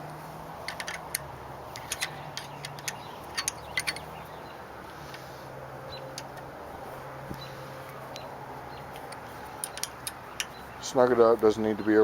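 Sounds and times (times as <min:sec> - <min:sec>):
allen wrench clicking on screws: 0:00.6 - 0:04.2, 0:09.0 - 0:10.6.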